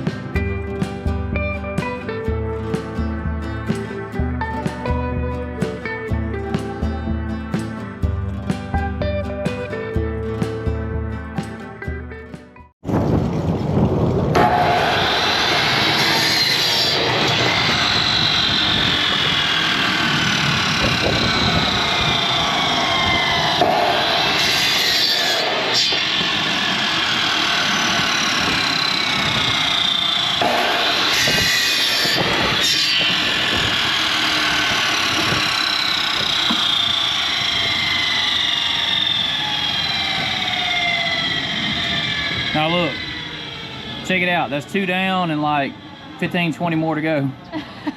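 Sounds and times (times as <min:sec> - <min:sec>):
band sawmill cutting log: 0:14.3 - 0:47.2.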